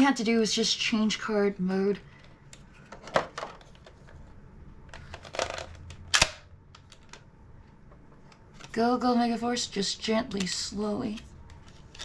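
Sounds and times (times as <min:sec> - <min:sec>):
loud plastic snap: 0:06.0 - 0:06.5.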